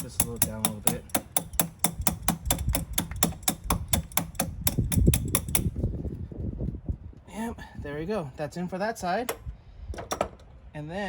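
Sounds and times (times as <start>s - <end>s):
rapid metal tapping: 0.0s - 5.8s.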